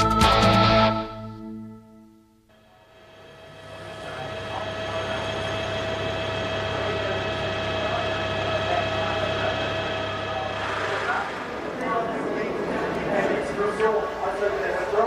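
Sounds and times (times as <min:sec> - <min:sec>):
broad rushing noise: 0:03.0 - 0:15.0
race car engines running: 0:03.0 - 0:15.0.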